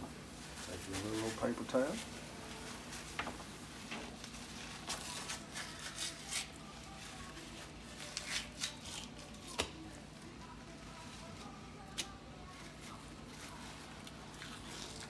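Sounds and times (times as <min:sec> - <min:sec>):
low steady hum: 0:00.0 - 0:08.2
paper towel rustling: 0:00.0 - 0:15.0.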